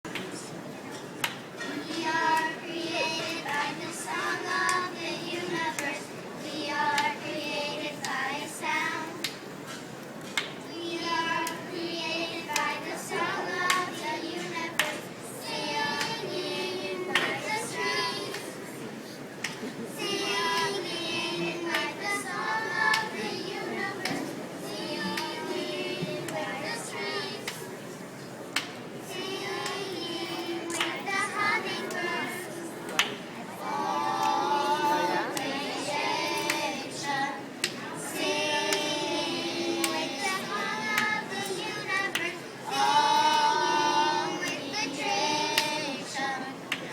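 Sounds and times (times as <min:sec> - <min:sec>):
girls' choir singing: 0:01.6 - 0:09.8, 0:10.6 - 0:46.9
sharp hand claps: 0:28.6 - 0:28.8, 0:30.7 - 0:31.0, 0:32.9 - 0:33.2.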